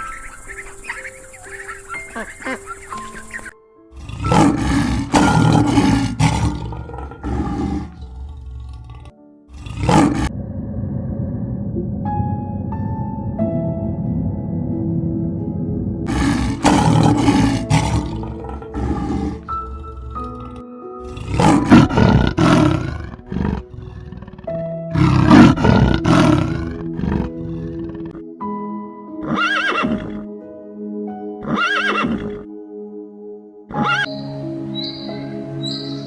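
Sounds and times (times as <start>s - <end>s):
background music: 0.0s - 10.4s, 11.3s - 36.0s
loud animal calls: 16.1s - 24.4s.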